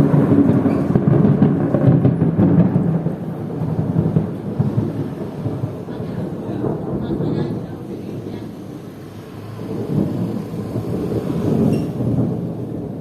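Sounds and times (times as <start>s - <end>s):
heavy rain hiss: 0.0s - 13.0s
low thunder rumble: 0.0s - 13.0s.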